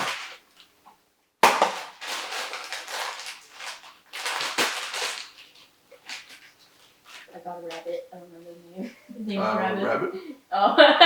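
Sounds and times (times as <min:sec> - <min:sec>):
packaging crinkling and rustling: 0:00.0 - 0:00.8, 0:01.4 - 0:08.0.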